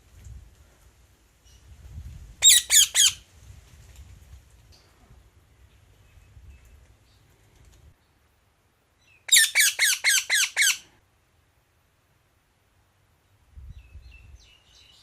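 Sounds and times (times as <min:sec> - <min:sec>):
parakeet squawking: 0:02.4 - 0:03.2, 0:09.3 - 0:10.8.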